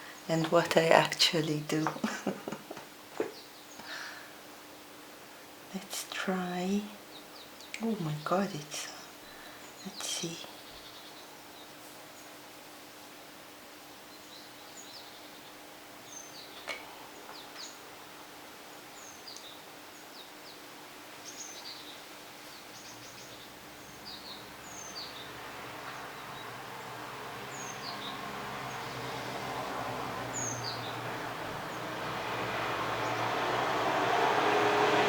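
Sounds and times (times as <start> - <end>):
small birds chirping: 3.1 - 4.2, 6.0 - 12.4, 13.9 - 33.4
vehicle approaching: 23.1 - 35.0.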